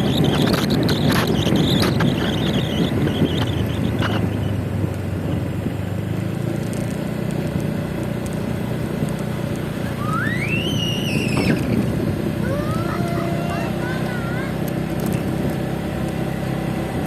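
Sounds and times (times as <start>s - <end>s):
road and wind noise: 0.0s - 17.0s
scooter engine running: 0.0s - 17.0s
high whistle-like tone: 9.8s - 11.8s.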